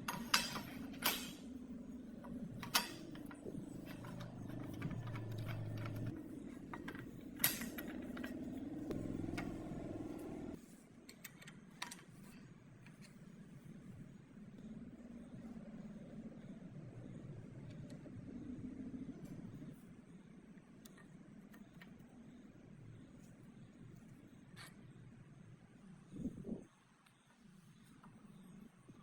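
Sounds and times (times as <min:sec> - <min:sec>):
steady hum: 0:00.0 - 0:10.9
hard objects clicking and knocking: 0:02.2 - 0:10.4.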